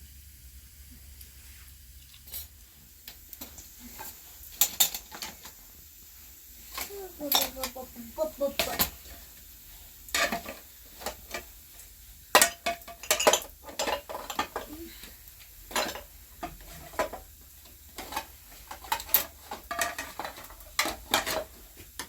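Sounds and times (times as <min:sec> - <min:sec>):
dishes and utensils clinking: 0:04.0 - 0:05.5, 0:06.7 - 0:07.8, 0:10.1 - 0:11.5, 0:12.3 - 0:14.9, 0:15.7 - 0:17.3, 0:17.9 - 0:21.7.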